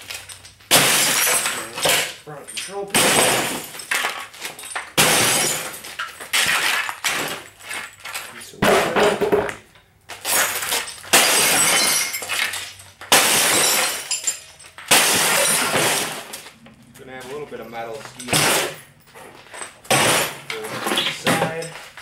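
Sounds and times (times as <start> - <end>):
glass breaking: 0.0 - 9.5, 10.1 - 16.6, 17.8 - 22.0
debris clattering: 0.0 - 22.0.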